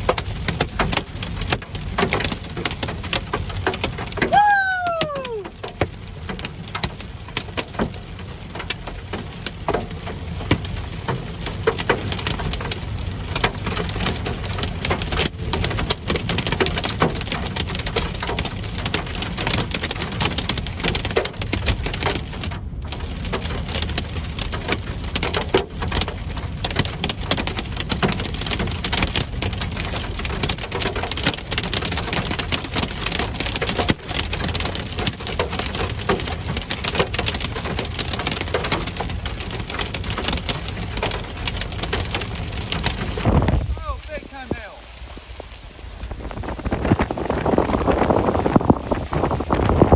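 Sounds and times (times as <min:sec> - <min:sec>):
hail clicking and knocking: 0:00.0 - 0:49.9
rain: 0:00.0 - 0:49.9
wind: 0:00.0 - 0:49.9.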